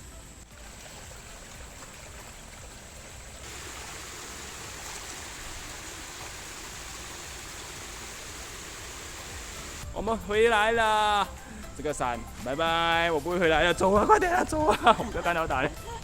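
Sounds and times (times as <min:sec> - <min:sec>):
stream water rushing: 0:00.5 - 0:09.8.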